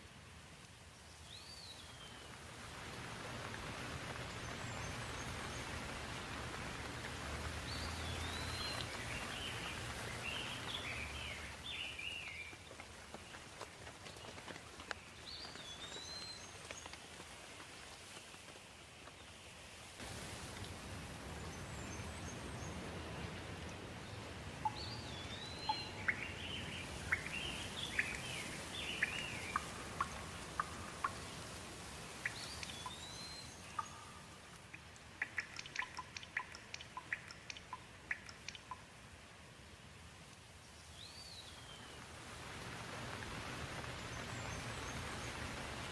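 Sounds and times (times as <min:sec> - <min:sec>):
steady rain: 0:00.0 - 0:45.9
sharp drip-like clicks: 0:03.3 - 0:17.3, 0:23.2 - 0:39.2
songbirds whistling: 0:07.7 - 0:12.5, 0:24.6 - 0:31.2, 0:32.2 - 0:34.2.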